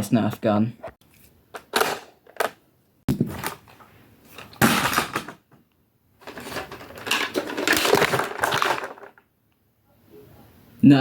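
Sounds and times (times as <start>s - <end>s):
plastic rustling and rattling: 6.2s - 9.3s.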